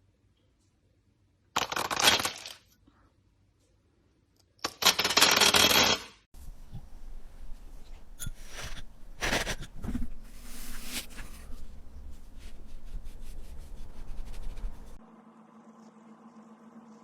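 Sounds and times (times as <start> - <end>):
steady rustling: 6.4 - 15.0.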